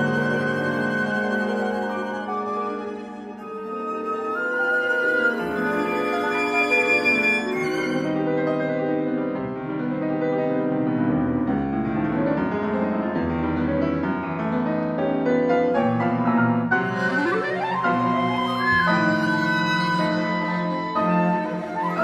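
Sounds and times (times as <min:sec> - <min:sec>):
chamber ensemble playing: 0:00.0 - 0:09.3, 0:15.8 - 0:22.0
piano: 0:00.0 - 0:22.0.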